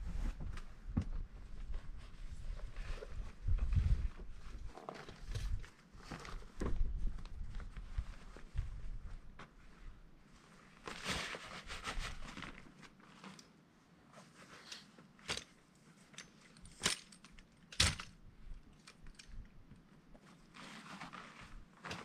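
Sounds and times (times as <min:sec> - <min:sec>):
rustle of fabric or bags: 0:01.4 - 0:13.4, 0:20.2 - 0:22.0.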